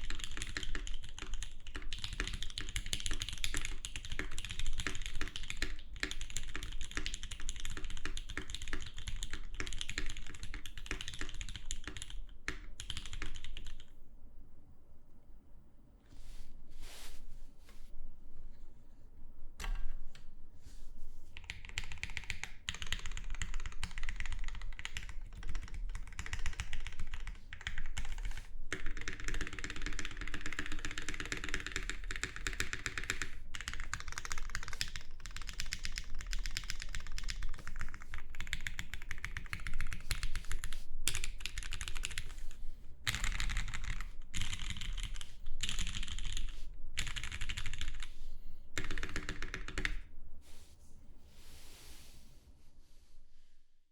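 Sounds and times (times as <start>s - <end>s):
mechanical keyboard typing: 0.0s - 13.9s, 21.4s - 42.5s, 43.1s - 48.1s, 48.8s - 50.0s.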